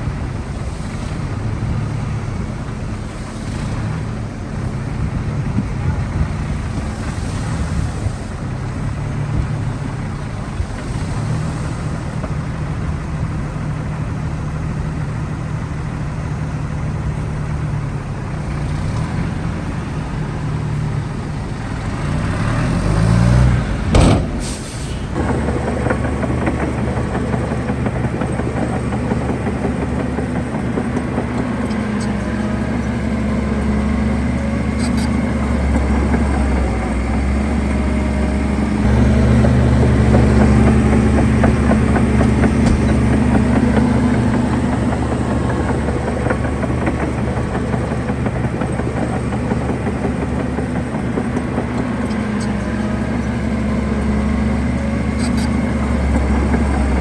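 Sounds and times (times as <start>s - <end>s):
heavy diesel machinery engines: 0.0s - 57.0s
loud hiss-like burst: 23.9s - 25.2s.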